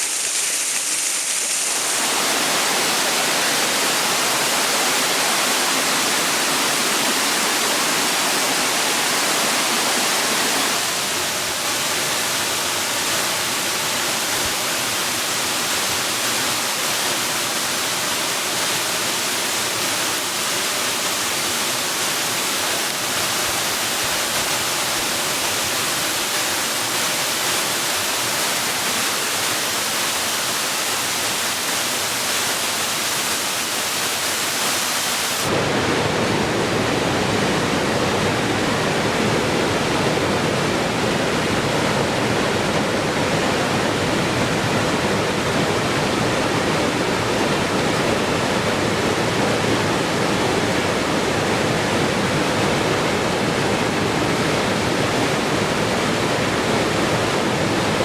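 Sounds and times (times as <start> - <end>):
rushing water: 0.0 - 58.0.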